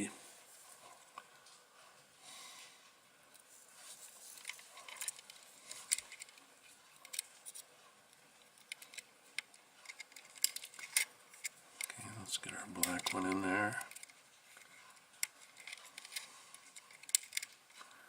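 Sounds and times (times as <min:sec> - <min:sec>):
small metal tool clicking and scraping: 0:04.4 - 0:07.6, 0:08.4 - 0:17.9.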